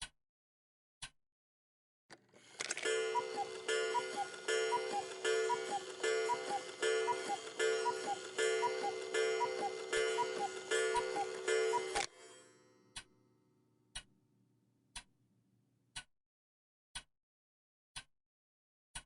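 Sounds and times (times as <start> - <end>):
cuckoo clock calling: 2.5 - 12.4.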